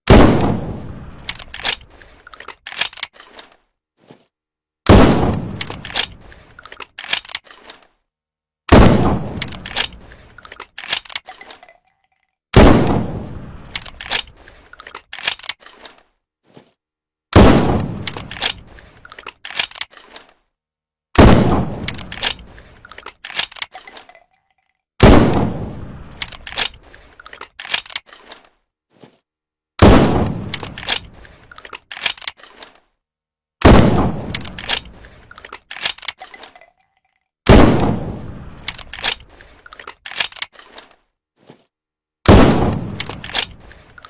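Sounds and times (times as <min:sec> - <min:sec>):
shotgun blasts: 0:00.1 - 0:01.1, 0:04.9 - 0:05.8, 0:08.7 - 0:09.7, 0:12.6 - 0:13.6, 0:17.3 - 0:18.3, 0:21.2 - 0:22.0, 0:25.0 - 0:26.0, 0:29.8 - 0:30.6, 0:33.6 - 0:34.5, 0:37.5 - 0:38.6, 0:42.3 - 0:43.2.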